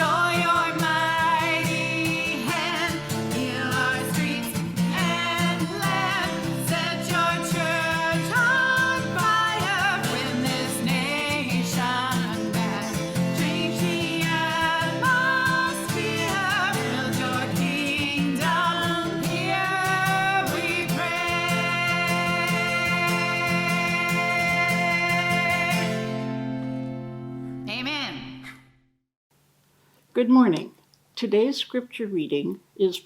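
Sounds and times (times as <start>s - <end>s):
person singing with vibrato: 0.0s - 26.4s
guitar accompaniment: 0.0s - 28.6s.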